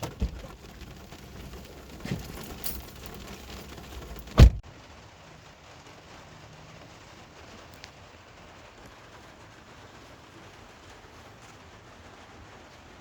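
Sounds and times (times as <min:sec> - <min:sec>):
car door shutting: 0:00.0 - 0:00.7, 0:04.2 - 0:04.6
low shuffling movement: 0:00.0 - 0:04.6.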